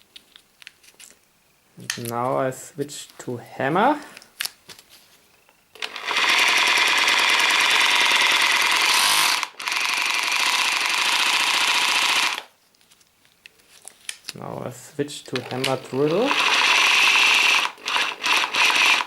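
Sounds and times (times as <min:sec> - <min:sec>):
hammer drill rattling: 0:05.8 - 0:12.5, 0:15.4 - 0:19.0.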